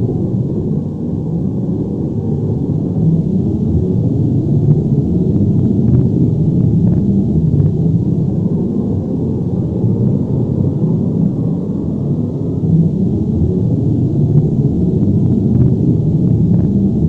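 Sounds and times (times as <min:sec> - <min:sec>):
deep rumble: 0:00.0 - 0:17.0.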